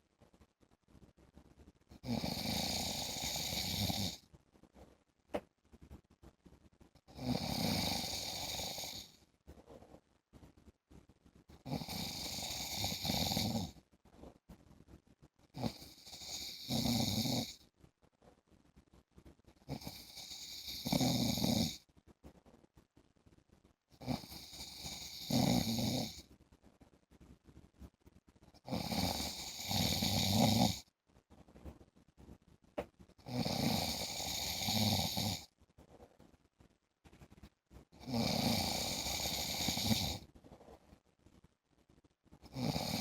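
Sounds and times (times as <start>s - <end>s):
quiet breathing: 0.0s - 43.0s
man snoring: 2.0s - 4.2s, 7.1s - 9.1s, 11.7s - 13.8s, 15.6s - 17.6s, 19.7s - 21.8s, 24.0s - 26.2s, 28.7s - 30.8s, 33.3s - 35.4s, 38.0s - 40.2s, 42.5s - 43.0s.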